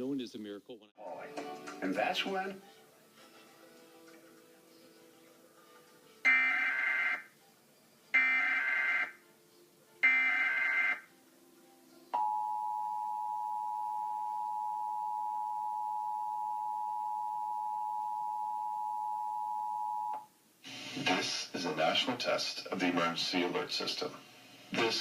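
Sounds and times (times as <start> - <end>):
two-tone attention signal: 6.3 - 7.2, 8.2 - 9.1, 10.0 - 11.0.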